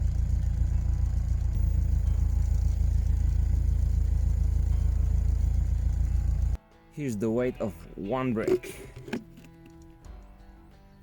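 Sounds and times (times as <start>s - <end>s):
diesel engine rumble: 0.0s - 6.6s.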